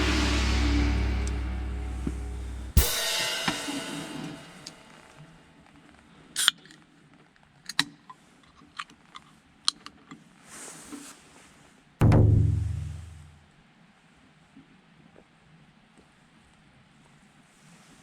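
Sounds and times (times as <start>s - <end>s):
cymbal crash in background music: 0.0s - 5.2s, 12.0s - 13.3s
soft hiss: 0.0s - 5.3s.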